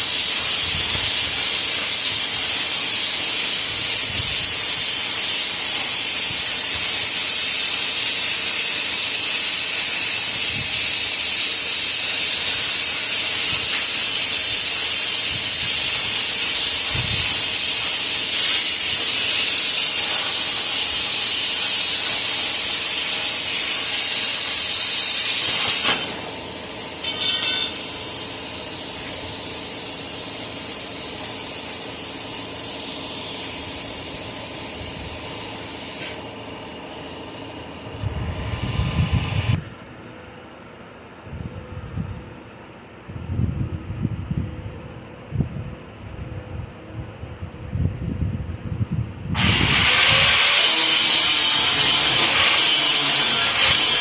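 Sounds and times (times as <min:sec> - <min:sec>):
loud spraying hiss: 0:00.0 - 0:36.2, 0:49.4 - 0:54.0.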